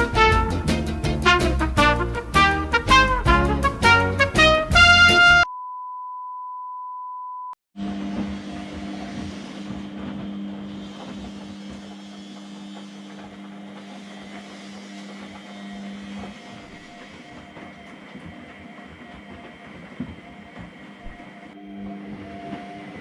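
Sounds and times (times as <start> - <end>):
washing machine humming: 0.0 - 5.2, 7.8 - 23.0
music: 0.0 - 5.5
electronic beep tone: 5.5 - 7.6.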